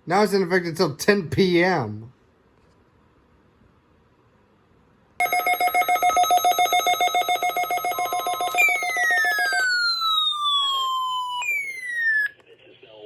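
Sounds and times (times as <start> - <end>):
pulsing electronic ringing alert: 5.2 - 12.3
long falling whistle: 7.6 - 12.4.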